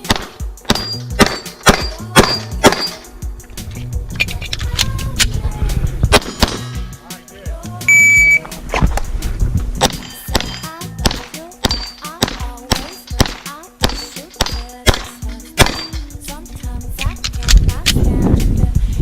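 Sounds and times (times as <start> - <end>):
pistol shots: 0.0 - 3.0, 6.1 - 6.7, 9.8 - 16.0
background music: 0.0 - 19.0
shot timer beep: 7.9 - 8.4.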